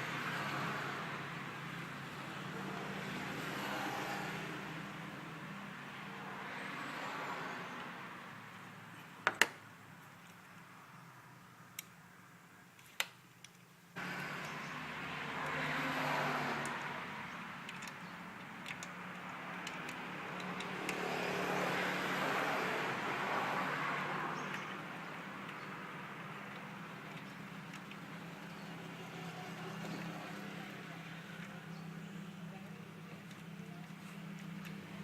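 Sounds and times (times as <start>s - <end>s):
sharp clicks: 16.6s - 21.1s.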